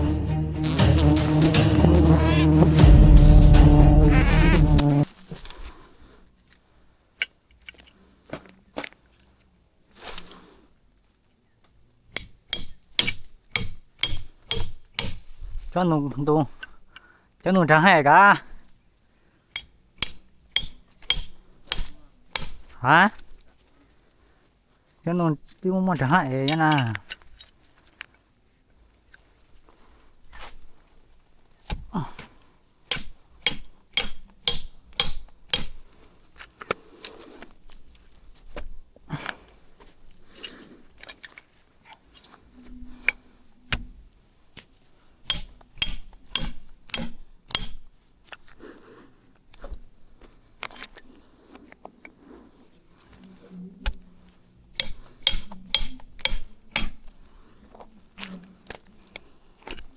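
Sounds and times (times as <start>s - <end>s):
sharp clinks and knocks: 12.2s - 15.3s, 19.6s - 22.7s, 32.9s - 36.5s, 40.1s - 42.4s, 45.3s - 47.9s, 54.8s - 57.1s.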